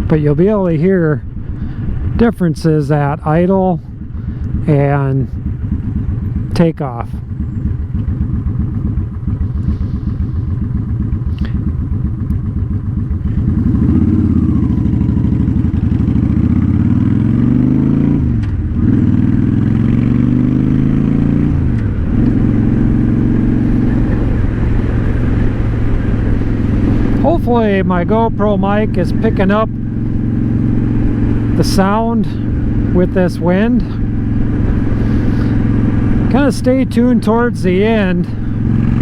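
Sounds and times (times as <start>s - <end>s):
motorcycle engine revving: 0.0s - 39.0s.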